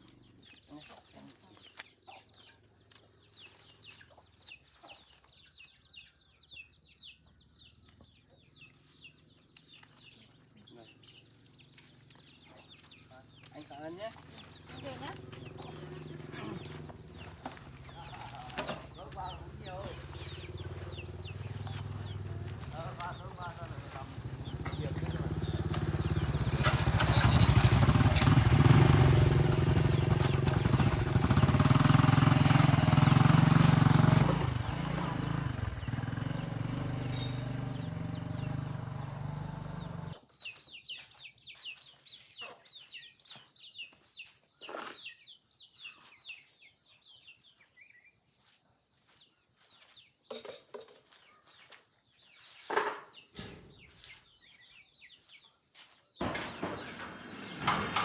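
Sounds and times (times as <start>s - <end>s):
quiet bird chirps: 0.0s - 32.0s, 34.6s - 57.6s
motorcycle engine running: 11.1s - 40.2s.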